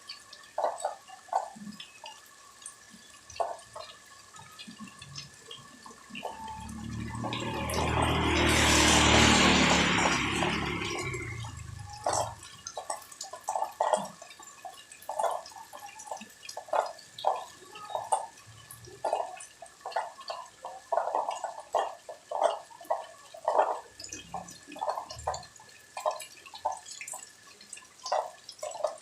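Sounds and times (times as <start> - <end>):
rainwater dripping into puddles: 0.0 - 29.0
loud rush of water: 6.2 - 12.4.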